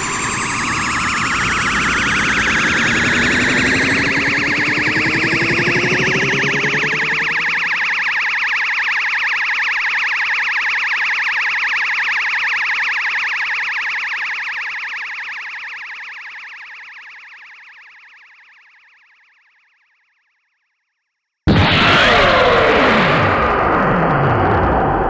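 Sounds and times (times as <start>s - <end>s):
pulsing energy beam effect: 0.0s - 8.4s, 21.5s - 25.0s.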